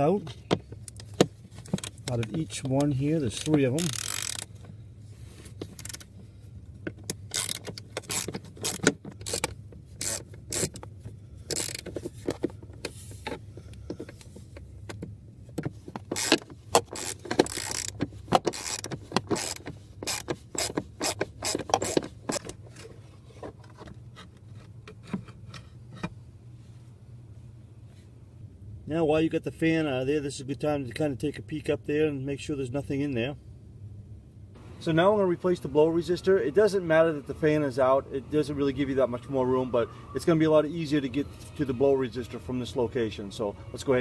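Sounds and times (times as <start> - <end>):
socket ratchet clicking: 3.3 - 4.6, 5.7 - 6.1, 7.0 - 10.9, 11.5 - 12.0, 16.0 - 22.5.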